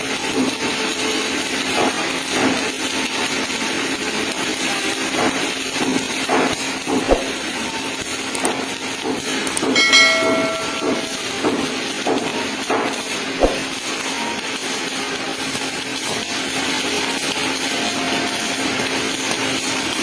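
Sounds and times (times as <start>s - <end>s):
welding arc crackling: 0.1s - 20.0s
metal knocks: 9.7s - 11.6s
ringing metallic clang: 9.7s - 11.6s.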